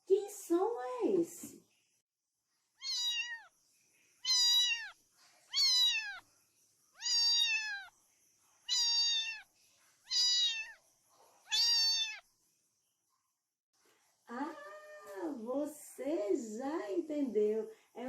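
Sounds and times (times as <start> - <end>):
cat meowing: 2.8 - 3.5, 4.2 - 6.2, 7.0 - 7.9, 8.7 - 9.5, 10.1 - 10.8, 11.5 - 12.2.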